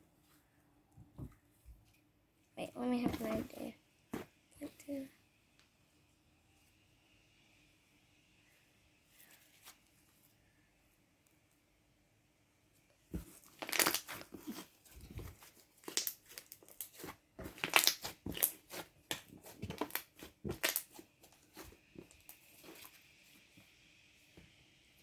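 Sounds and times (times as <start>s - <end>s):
slime crackling and popping: 13.2s - 22.9s.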